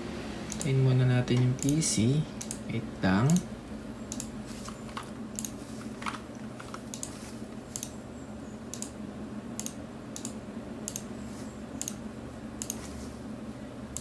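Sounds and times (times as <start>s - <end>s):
computer controls clicking: 0.5s - 3.5s, 4.1s - 8.0s, 8.7s - 9.0s, 9.6s - 11.1s, 11.8s - 12.0s, 12.6s - 12.8s.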